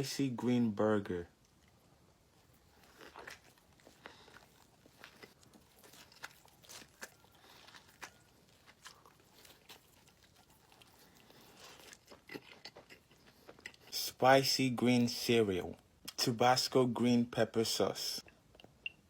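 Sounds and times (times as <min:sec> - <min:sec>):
chewing food: 0:01.3 - 0:14.0.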